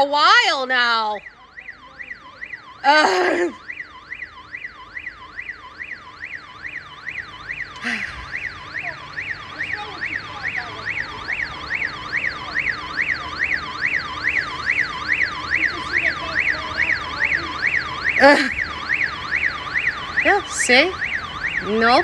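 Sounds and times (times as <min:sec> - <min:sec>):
burglar alarm siren: 0:00.0 - 0:22.0.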